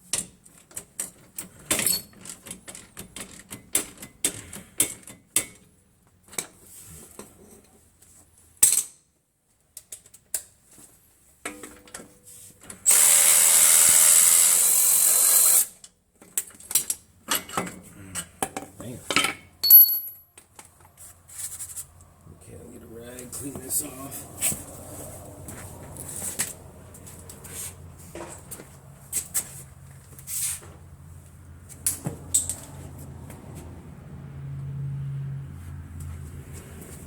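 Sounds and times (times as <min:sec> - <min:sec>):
metal tools clinking: 0:01.8 - 0:02.4, 0:19.1 - 0:20.5
power tool running: 0:12.9 - 0:15.7.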